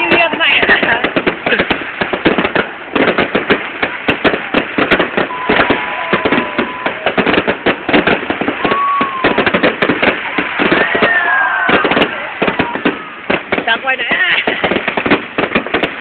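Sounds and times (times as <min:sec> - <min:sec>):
firework whistling: 0:00.0 - 0:16.0
fireworks crackling bangs: 0:00.0 - 0:16.0.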